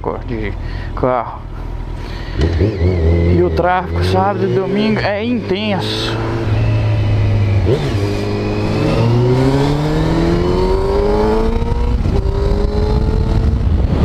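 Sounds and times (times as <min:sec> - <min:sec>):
motorcycle engine accelerating: 0:01.9 - 0:14.0
wind rumbling on microphone: 0:06.2 - 0:14.0.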